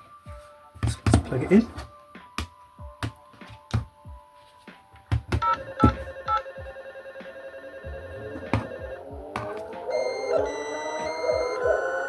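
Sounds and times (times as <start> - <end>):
electronic beeps: 5.4 - 12.0
steady synthesized tone: 7.6 - 12.0.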